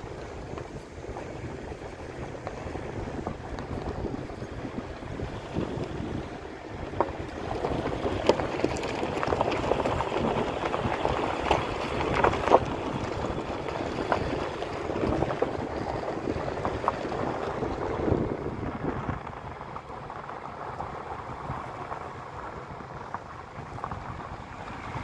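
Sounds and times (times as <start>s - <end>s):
wind rumbling on microphone: 0.0s - 25.0s.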